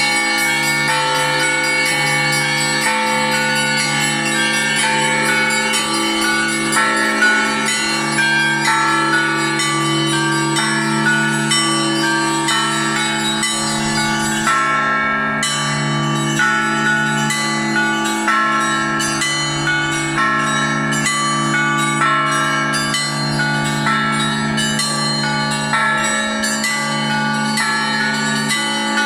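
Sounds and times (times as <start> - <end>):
deep bells humming: 0.0 - 29.0.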